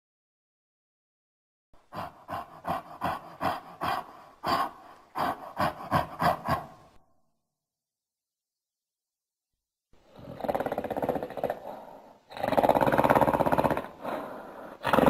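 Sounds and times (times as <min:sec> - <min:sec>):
gorilla huffing grunts: 0:01.8 - 0:07.0.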